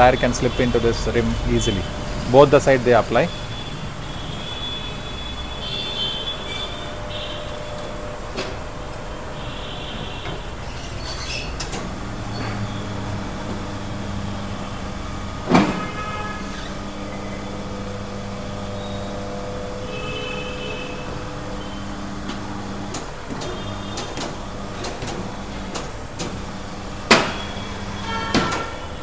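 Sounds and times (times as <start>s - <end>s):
high squeaks: 0.0s - 8.1s, 10.2s - 13.0s, 15.7s - 17.7s
tyre changer motor hum: 0.0s - 29.0s.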